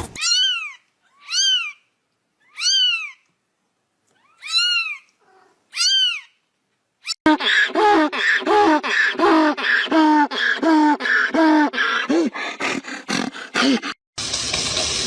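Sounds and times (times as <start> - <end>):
cat meowing: 2.5 - 3.2, 4.2 - 6.3.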